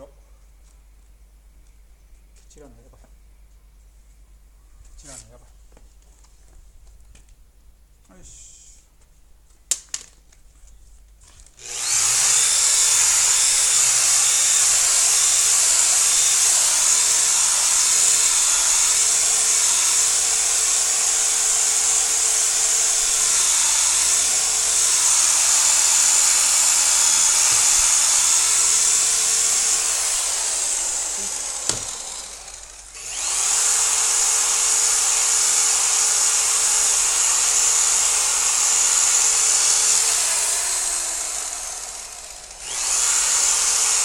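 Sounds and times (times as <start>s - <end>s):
electric car polisher running: 11.6s - 44.0s.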